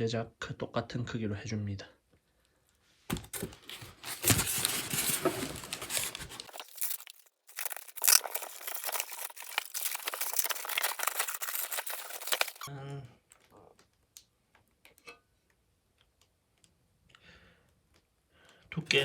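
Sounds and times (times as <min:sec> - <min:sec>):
packaging torn and crumpled: 0:03.3 - 0:12.7.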